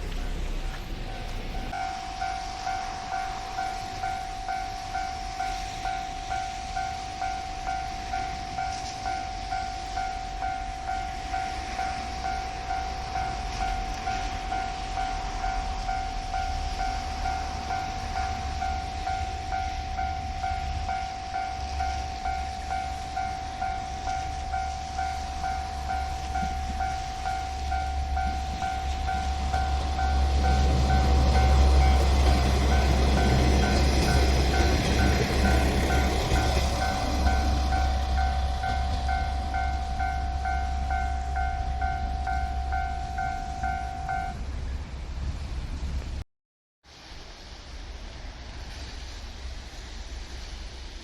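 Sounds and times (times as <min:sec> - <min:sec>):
level-crossing electronic bell: 0:01.0 - 0:44.4
low rumble: 0:11.8 - 0:46.2.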